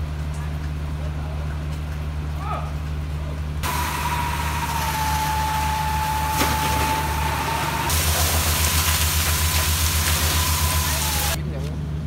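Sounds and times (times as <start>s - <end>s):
fire truck engine whining: 3.6s - 11.4s
hiss of spraying water: 3.6s - 11.4s.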